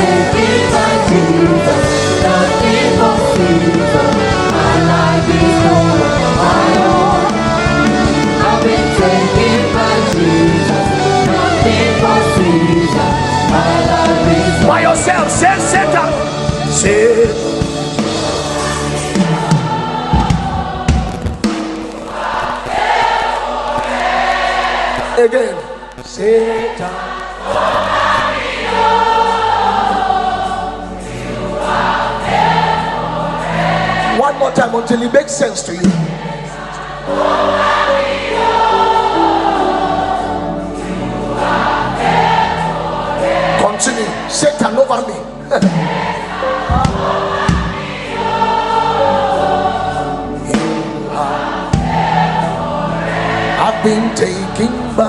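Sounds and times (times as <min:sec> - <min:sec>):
instrumental backing: 0:00.0 - 0:25.2, 0:25.8 - 0:55.0
congregation singing: 0:00.0 - 0:55.0.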